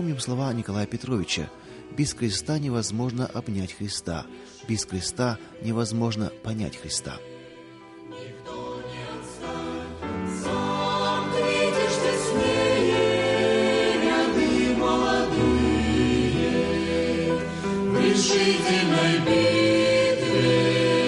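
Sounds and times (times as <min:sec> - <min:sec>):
choir singing: 0:04.8 - 0:21.0.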